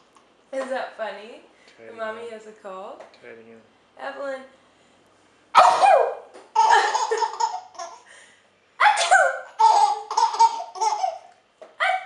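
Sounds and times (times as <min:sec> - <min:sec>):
baby giggling: 0:06.5 - 0:08.0, 0:09.5 - 0:11.3.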